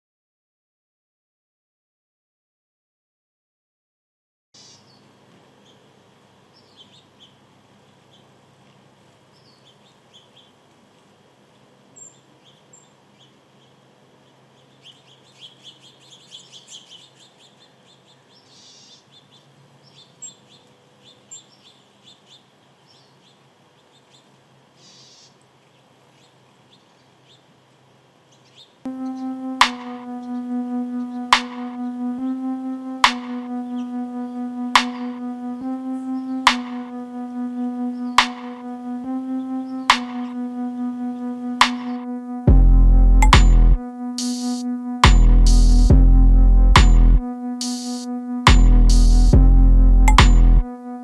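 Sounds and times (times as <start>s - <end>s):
small birds chirping: 4.6s - 31.8s.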